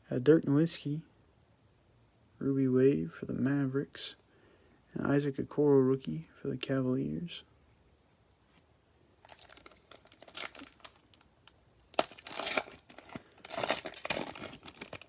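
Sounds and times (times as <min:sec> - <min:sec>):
foil wrapper crinkling and tearing: 0:09.2 - 0:15.0.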